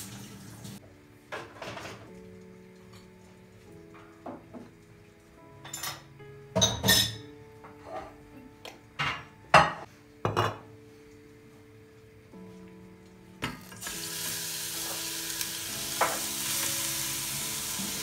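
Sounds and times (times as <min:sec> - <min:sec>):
soft background music: 0:00.0 - 0:18.0
dishes and cutlery clinking: 0:01.3 - 0:02.2, 0:05.6 - 0:10.8, 0:16.0 - 0:16.3.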